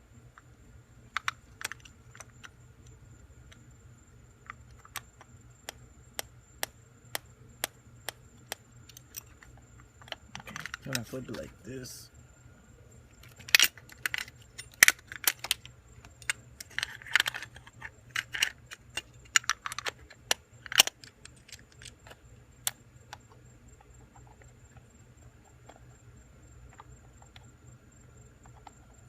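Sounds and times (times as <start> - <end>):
plastic plug clicks and rattles: 1.1 - 3.6, 4.4 - 11.4, 13.2 - 24.8.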